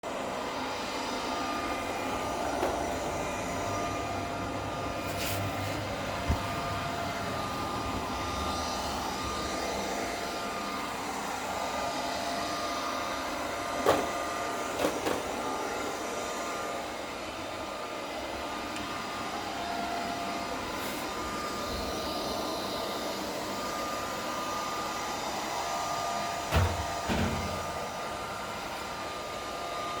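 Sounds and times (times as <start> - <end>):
robot vacuum whirring: 0.7 - 17.2.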